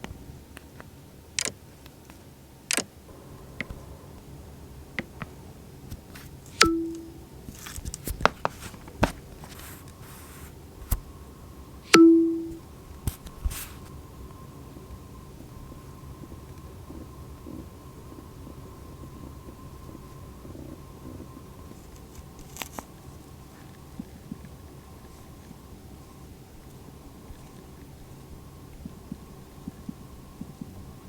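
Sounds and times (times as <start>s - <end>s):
sharp clicks and taps: 6.6s - 7.2s
phone alert dings: 6.6s - 7.3s, 11.9s - 12.6s.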